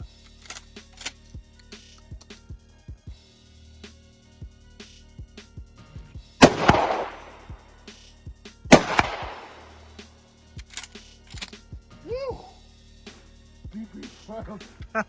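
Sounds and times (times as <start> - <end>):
shotgun shots with echo: 6.4 - 7.8, 8.7 - 10.0.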